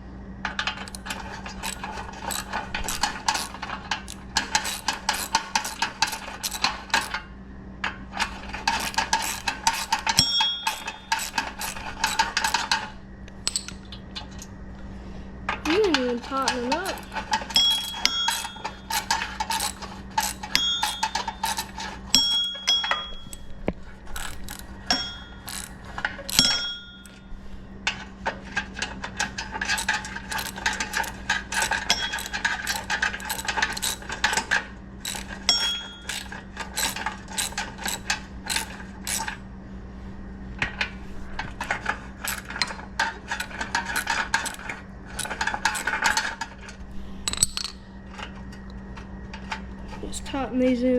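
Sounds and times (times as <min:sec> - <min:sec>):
faint steady hum: 0:00.0 - 0:50.9
ratchet wrench clicking: 0:00.8 - 0:07.2, 0:08.6 - 0:12.8, 0:16.3 - 0:23.5, 0:24.1 - 0:27.2, 0:29.6 - 0:39.4, 0:42.2 - 0:44.6.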